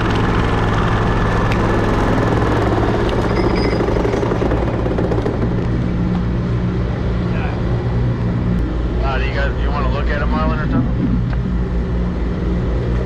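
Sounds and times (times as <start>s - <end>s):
low engine drone: 0.0s - 13.0s
vibratory hammer rattle: 2.3s - 6.0s.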